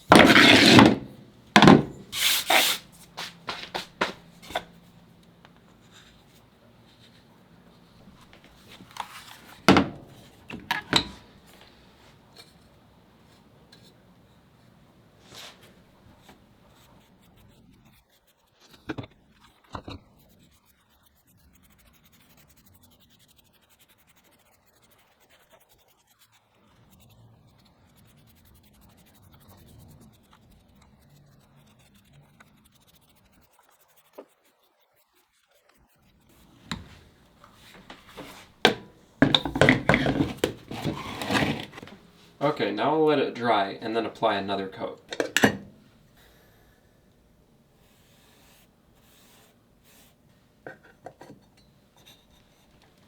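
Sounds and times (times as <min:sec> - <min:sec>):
sharp knocks: 0:00.1 - 0:02.2
metal and wood clattering: 0:00.1 - 0:02.7, 0:08.4 - 0:11.4, 0:36.7 - 0:42.4
scratching and rubbing on wood: 0:00.1 - 0:12.6, 0:36.3 - 0:42.9.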